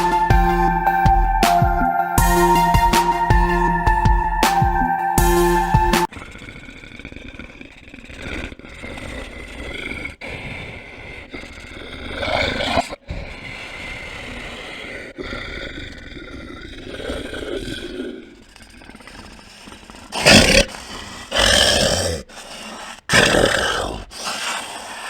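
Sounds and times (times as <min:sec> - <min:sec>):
rough drawn-out growls: 0:06.1 - 0:13.1.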